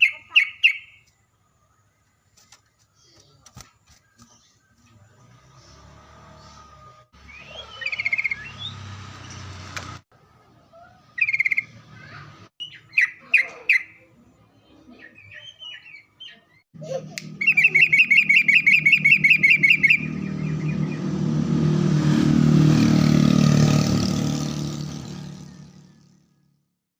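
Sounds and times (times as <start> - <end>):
bird calling in bubbly phrases: 0.0 - 1.0, 12.6 - 14.1, 17.4 - 20.8
repeated bird chirps: 0.0 - 1.2, 7.2 - 9.5, 11.1 - 14.1, 17.3 - 21.4.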